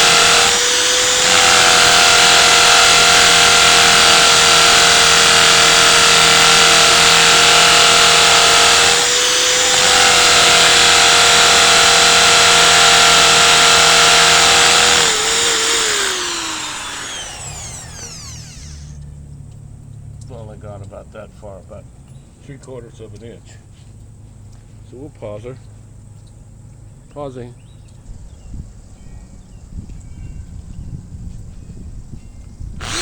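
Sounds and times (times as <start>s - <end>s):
electric drill motor: 0.0s - 19.0s, 32.8s - 33.0s.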